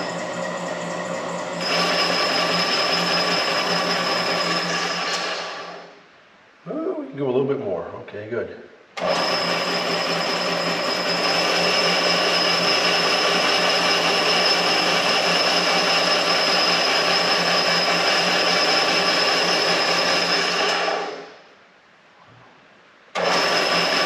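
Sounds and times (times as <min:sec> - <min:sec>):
power tool motor whining: 0:00.0 - 0:05.8, 0:09.0 - 0:21.2, 0:23.2 - 0:24.0.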